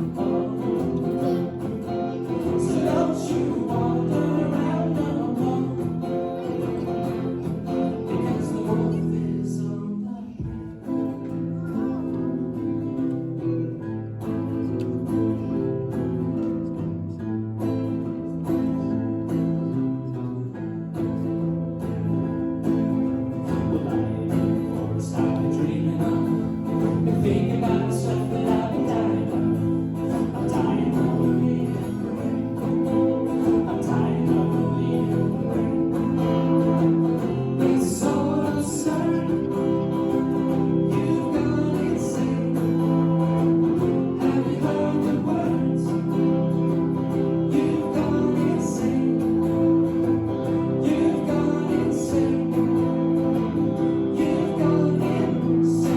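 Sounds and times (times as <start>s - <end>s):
live band with guitar: 0.0s - 55.9s.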